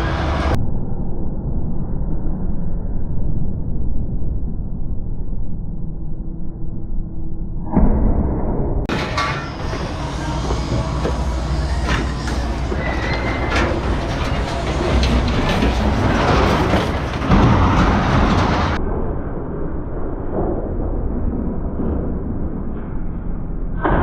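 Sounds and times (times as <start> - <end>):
heavy machinery rumble: 0.0 - 0.6, 7.7 - 24.0
scrap metal clanking: 8.9 - 18.8.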